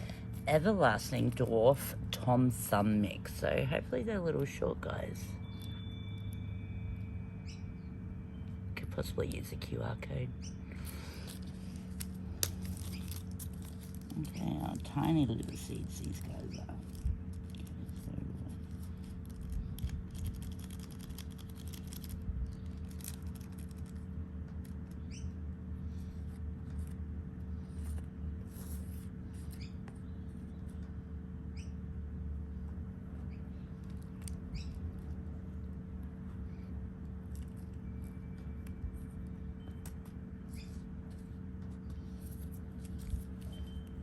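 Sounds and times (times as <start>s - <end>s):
steady low hum: 0.0s - 44.0s
seeds rustling from paper packet: 10.7s - 25.1s, 25.8s - 29.6s, 33.6s - 44.0s.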